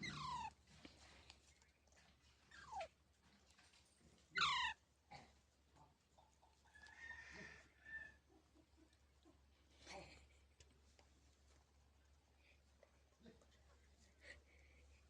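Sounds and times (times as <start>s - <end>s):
parrot calling: 4.4s - 4.8s.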